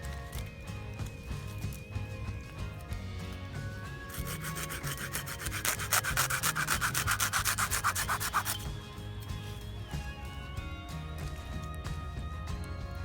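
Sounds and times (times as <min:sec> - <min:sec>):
rapid rhythmic scraping: 0:00.0 - 0:10.1
quiet background music: 0:00.0 - 0:13.0.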